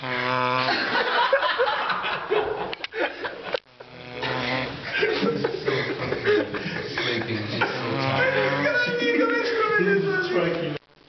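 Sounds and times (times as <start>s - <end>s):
man snoring: 0.0s - 0.8s, 3.8s - 5.0s, 7.0s - 8.8s
people chuckling: 0.6s - 8.9s.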